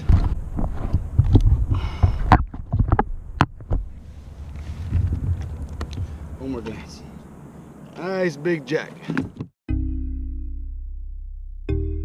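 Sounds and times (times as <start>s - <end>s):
wind rumble on microphone: 0.0s - 6.9s
water noise: 0.0s - 9.0s.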